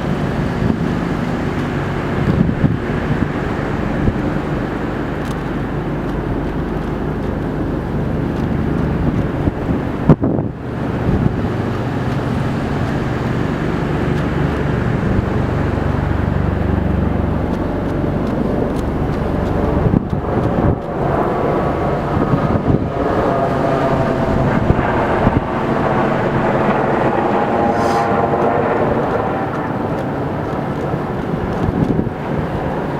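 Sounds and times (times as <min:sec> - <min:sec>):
higher droning tone: 0:00.0 - 0:32.9
low engine-like hum: 0:00.0 - 0:32.9
vehicle noise: 0:00.0 - 0:32.9
wind: 0:00.0 - 0:32.9.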